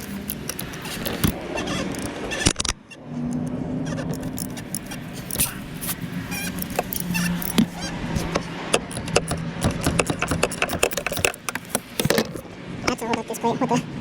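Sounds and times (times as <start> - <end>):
wrench and socket clicking: 3.3 - 12.4.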